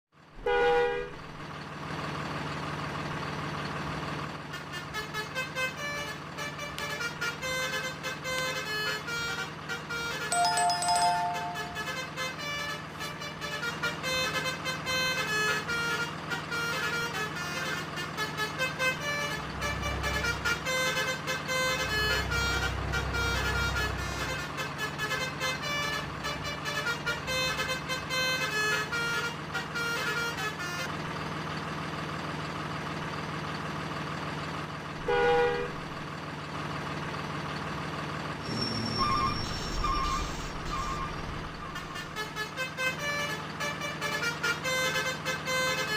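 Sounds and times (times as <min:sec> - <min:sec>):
melodic bus horn: 0:00.4 - 0:01.3, 0:04.4 - 0:31.4, 0:35.0 - 0:36.2, 0:38.4 - 0:45.9
truck engine humming: 0:01.1 - 0:45.9.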